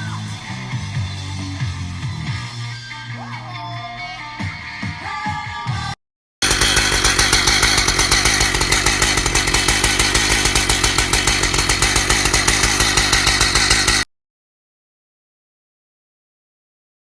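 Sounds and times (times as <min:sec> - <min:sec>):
chainsaw running at high revs: 0:06.4 - 0:14.1.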